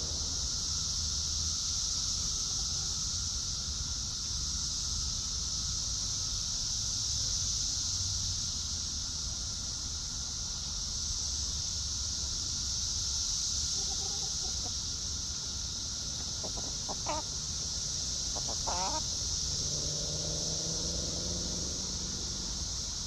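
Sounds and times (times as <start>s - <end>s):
high-pitched hiss: 0.0s - 23.0s
chickens clucking: 13.8s - 14.8s, 16.2s - 17.5s, 18.3s - 19.2s.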